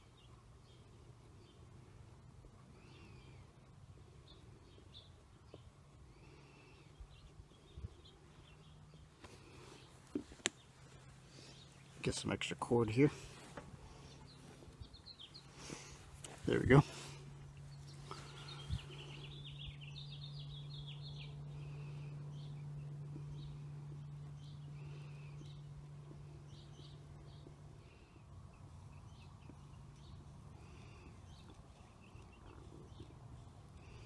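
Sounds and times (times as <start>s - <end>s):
small birds chirping: 0.0s - 34.0s
steady low hum: 0.0s - 34.0s.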